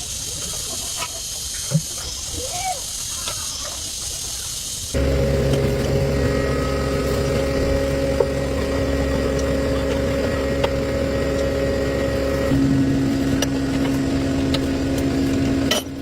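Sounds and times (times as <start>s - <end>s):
tractor engine idling: 5.0s - 16.0s.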